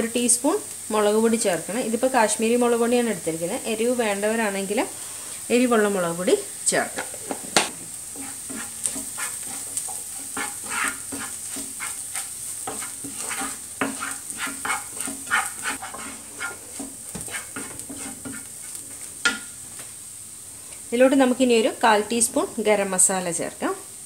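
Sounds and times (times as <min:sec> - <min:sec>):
onions sizzling in oil: 0:00.0 - 0:24.0
spatula scraping a pan: 0:06.7 - 0:19.6.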